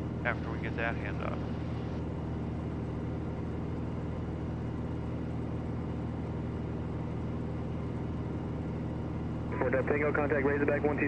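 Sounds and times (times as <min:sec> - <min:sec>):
airplane engine cabin drone: 0:00.0 - 0:11.0.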